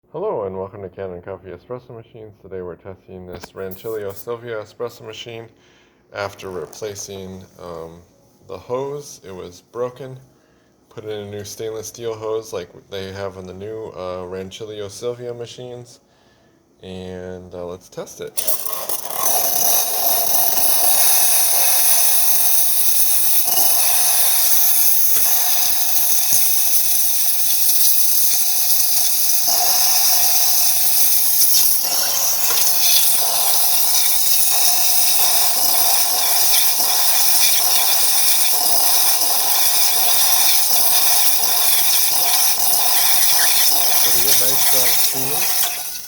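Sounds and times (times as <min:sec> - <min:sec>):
steam wand hissing: 0:18.4 - 0:46.0.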